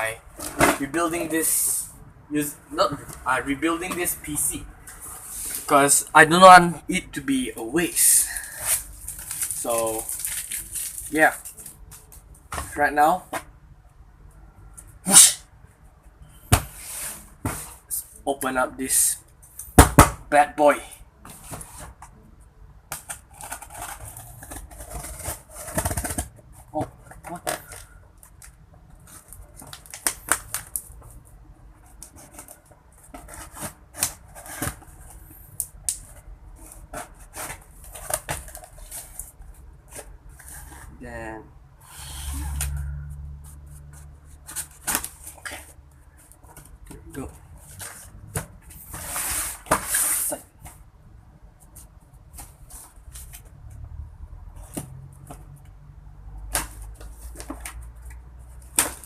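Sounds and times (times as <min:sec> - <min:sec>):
packaging being handled: 0:08.4 - 0:12.2.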